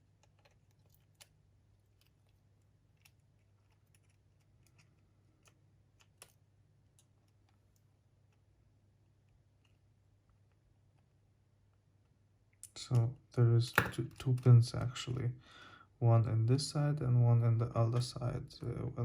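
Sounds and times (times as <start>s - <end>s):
small parts clicking and tapping: 0.0s - 8.4s
low steady hum: 0.0s - 19.0s.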